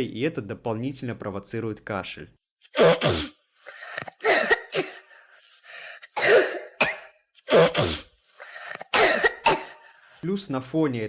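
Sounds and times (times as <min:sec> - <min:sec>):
child coughing: 0:02.7 - 0:05.1, 0:06.0 - 0:09.8.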